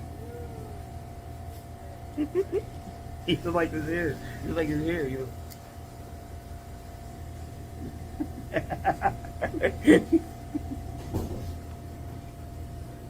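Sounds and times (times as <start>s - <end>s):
person chuckling: 2.2s - 3.5s, 7.8s - 11.4s.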